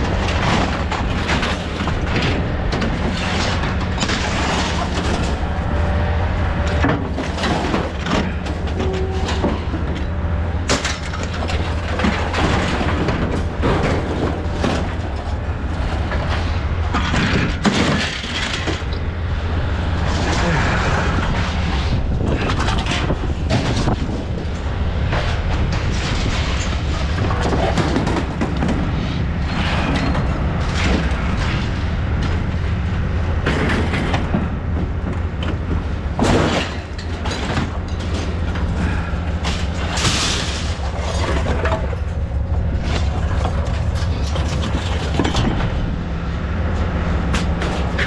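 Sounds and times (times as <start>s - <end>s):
knocks and rattles: 0.0s - 5.6s, 6.6s - 19.0s, 33.4s - 45.9s
truck engine drone: 0.0s - 48.0s.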